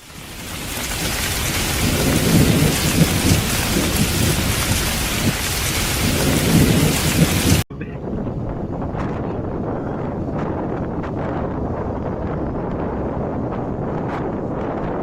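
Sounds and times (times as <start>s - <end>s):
heavy rain pouring: 0.0s - 7.7s
rolling thunder: 0.0s - 15.0s.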